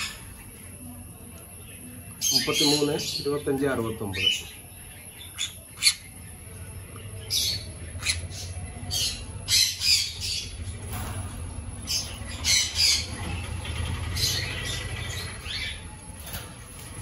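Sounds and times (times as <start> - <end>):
parrots squawking: 0.0 - 0.5, 5.2 - 6.2, 7.3 - 10.6, 11.8 - 13.4.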